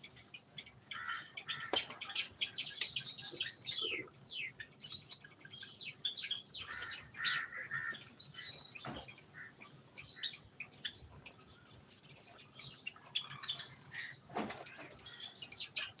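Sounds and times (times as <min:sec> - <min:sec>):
birds chirping: 0:00.0 - 0:16.0
rustle: 0:06.6 - 0:16.0.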